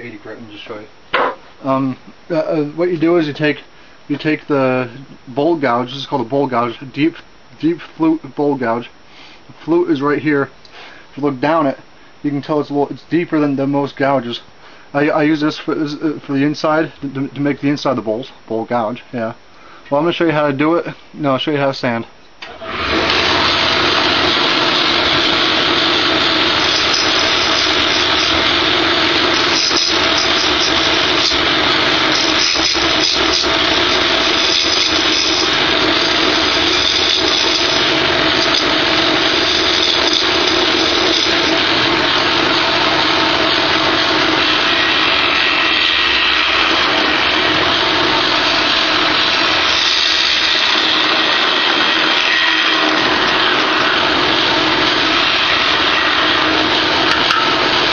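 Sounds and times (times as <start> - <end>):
wood lathe motor hum: 22.4 - 57.9
gouge cutting hiss: 23.2 - 57.9.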